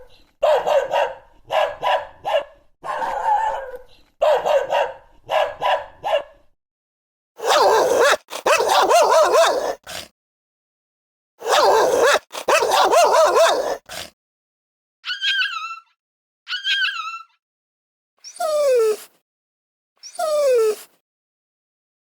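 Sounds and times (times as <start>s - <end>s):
dog barking: 0.0s - 6.5s, 7.4s - 10.1s, 11.4s - 14.1s
dog whimpering and whining: 7.4s - 9.8s, 11.4s - 13.8s, 15.1s - 15.9s, 16.5s - 17.4s, 18.2s - 19.1s, 20.0s - 21.0s.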